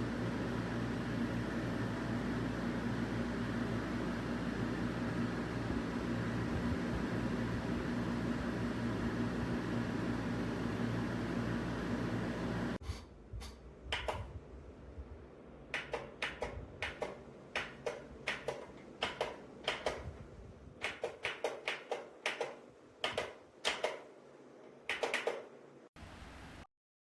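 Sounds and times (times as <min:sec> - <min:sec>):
light clicks and taps: 0:13.4 - 0:14.4.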